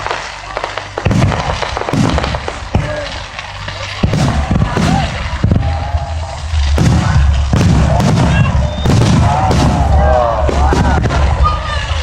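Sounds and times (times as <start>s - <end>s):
fireworks bangs: 0.0s - 12.0s
low rumble: 0.0s - 12.0s.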